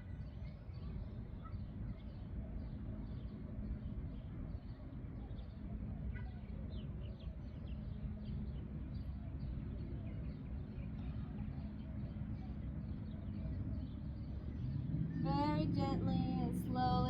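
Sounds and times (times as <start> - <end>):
low outdoor rumble: 0.0 - 17.0.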